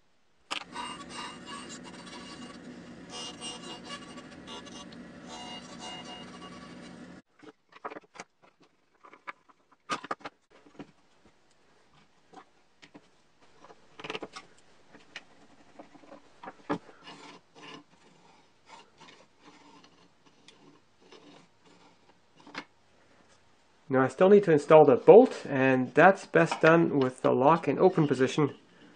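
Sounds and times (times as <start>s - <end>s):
wood scraping: 0.6s - 11.0s, 11.9s - 23.4s.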